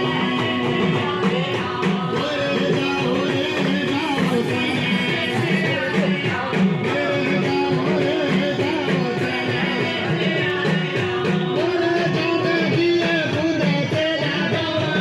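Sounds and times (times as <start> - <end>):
music with beat guitar and singing: 0.0 - 15.0.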